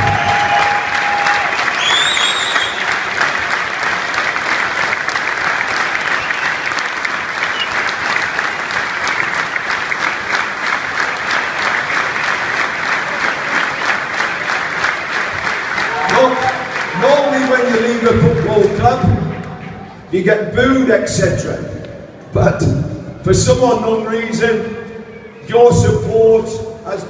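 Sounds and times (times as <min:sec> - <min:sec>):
stadium crowd applauding: 0:00.0 - 0:20.2.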